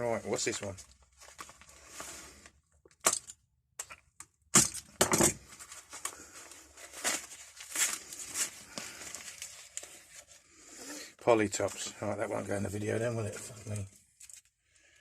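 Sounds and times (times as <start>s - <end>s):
wrapping crackling and rustling: 0.0s - 2.5s, 5.4s - 10.5s, 11.4s - 14.6s.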